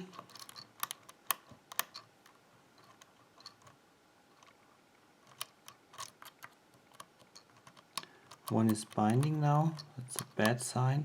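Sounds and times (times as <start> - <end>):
lock pick clicking in a lock: 0.0 - 2.1, 5.3 - 10.6.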